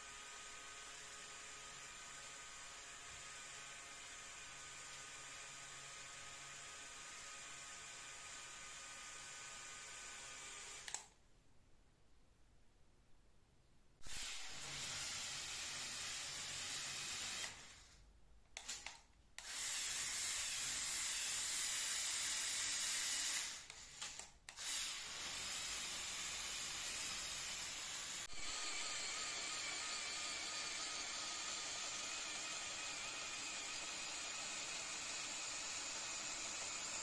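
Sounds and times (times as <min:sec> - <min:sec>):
toy electric motors whirring: 0:18.6 - 0:37.0.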